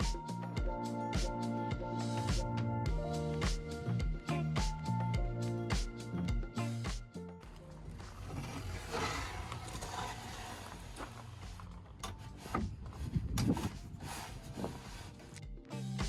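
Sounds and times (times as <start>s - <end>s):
wooden lumber scraping and rustling: 7.4s - 15.4s.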